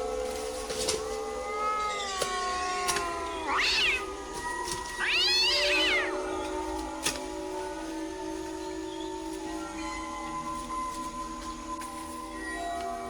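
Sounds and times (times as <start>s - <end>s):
small animal crying: 1.4s - 4.1s, 5.0s - 6.2s.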